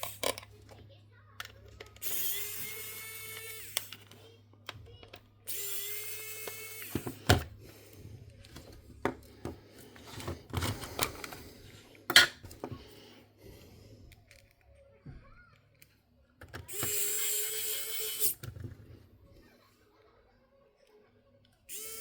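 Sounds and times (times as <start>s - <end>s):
small parts clicking and knocking: 0.0s - 0.8s
electric screwdriver whine: 2.0s - 4.0s, 5.5s - 7.4s, 16.7s - 18.4s, 21.7s - 22.0s.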